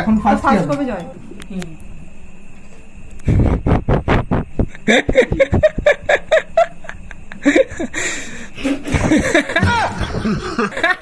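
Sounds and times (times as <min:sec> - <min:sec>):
people laughing and giggling: 0:03.3 - 0:08.0, 0:08.6 - 0:11.0.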